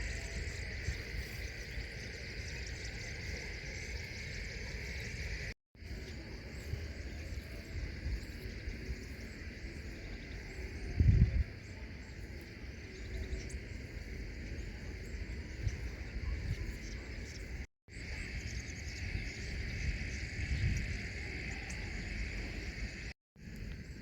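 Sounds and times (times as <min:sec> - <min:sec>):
insect chorus: 0:00.0 - 0:24.0.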